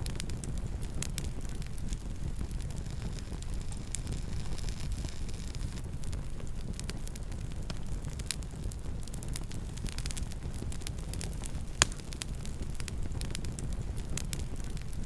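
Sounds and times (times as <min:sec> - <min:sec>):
campfire crackling and popping: 0:00.0 - 0:15.0
low fire rumble: 0:00.0 - 0:15.0.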